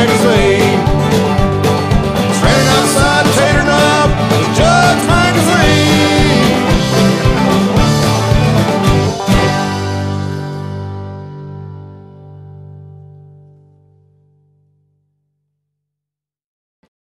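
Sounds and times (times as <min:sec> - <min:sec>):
drum beat: 0:00.0 - 0:10.2
electric guitar bending notes: 0:00.0 - 0:14.7.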